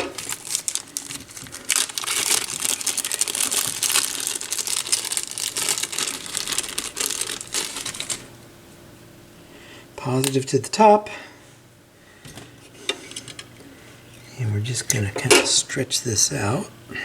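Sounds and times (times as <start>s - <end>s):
plastic bag crinkling: 0.0s - 8.4s.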